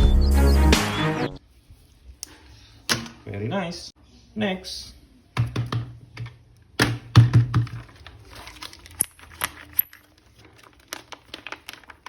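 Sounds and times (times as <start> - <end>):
plastic figures knocking and clicking: 5.4 - 8.2.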